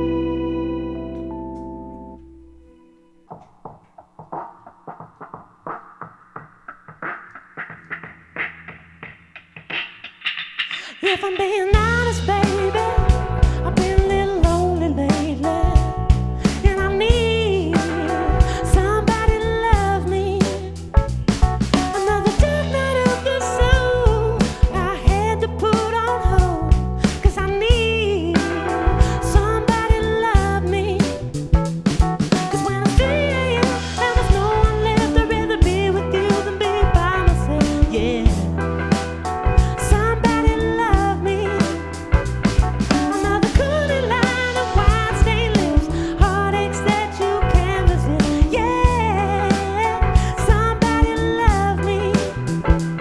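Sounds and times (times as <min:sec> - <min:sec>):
bending melody line: 0:00.0 - 0:03.4, 0:11.8 - 0:53.0
bass guitar: 0:00.0 - 0:04.3, 0:05.0 - 0:10.1, 0:11.7 - 0:53.0
electric guitar: 0:00.0 - 0:53.0
drum kit beat: 0:03.2 - 0:53.0.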